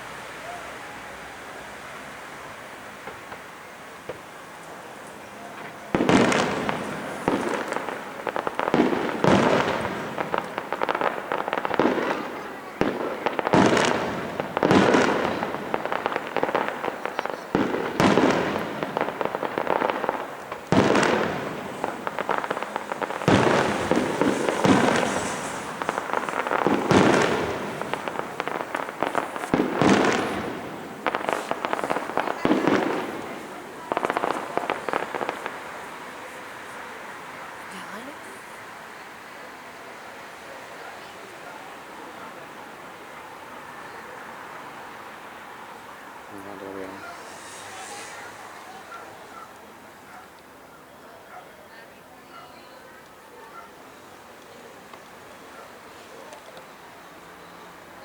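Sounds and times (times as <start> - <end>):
fireworks shells bursting: 5.0 - 38.1, 44.8 - 50.6.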